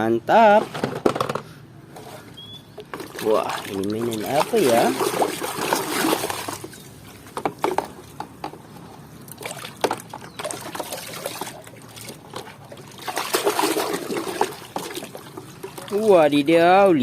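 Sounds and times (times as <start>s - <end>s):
small water splashes: 2.8s - 8.2s, 9.2s - 16.4s.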